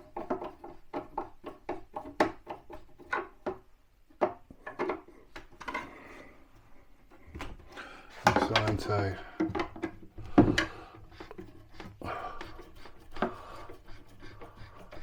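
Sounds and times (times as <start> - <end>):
wood knocks and clicks: 0.0 - 5.9, 7.2 - 12.0
wood rubbing: 0.0 - 15.0.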